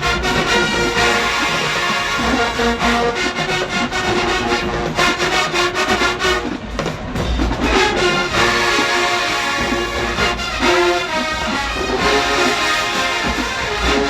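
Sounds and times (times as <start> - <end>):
marching band brass: 0.0 - 14.0
steady drum beat: 0.0 - 14.0.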